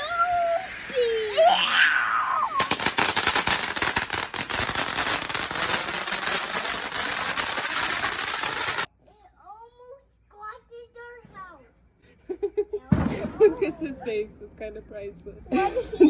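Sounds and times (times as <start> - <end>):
fireworks crackling: 0.0 - 8.9.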